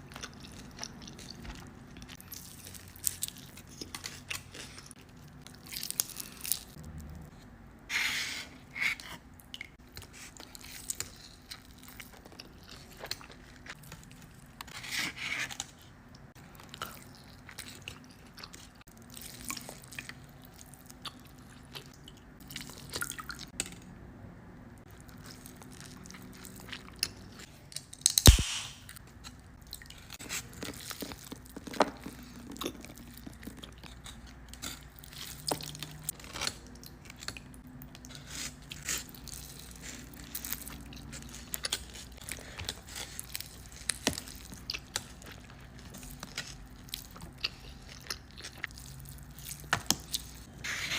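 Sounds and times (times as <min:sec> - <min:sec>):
chewing crunchy tacos: 0:00.0 - 0:07.3, 0:09.4 - 0:23.8, 0:24.8 - 0:50.9
sharp loud crack: 0:28.3 - 0:29.0.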